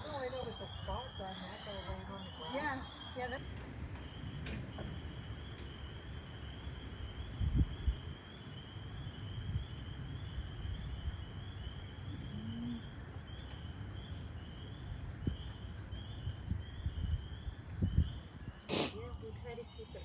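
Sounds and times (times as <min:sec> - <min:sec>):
high repeated chirping: 0:00.0 - 0:03.4.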